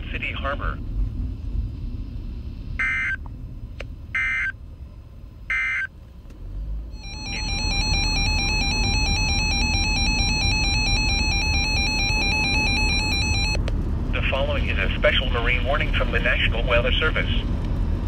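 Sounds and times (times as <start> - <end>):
loud continuous electronic tone: 2.8 - 3.2, 4.1 - 4.6, 5.5 - 5.9, 7.0 - 13.6.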